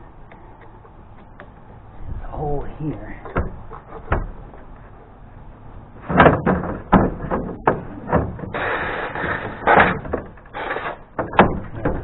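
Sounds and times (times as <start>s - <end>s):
metal clanks and knocks: 2.9s - 5.1s, 6.0s - 12.0s
metal scraping rasp: 7.9s - 11.1s.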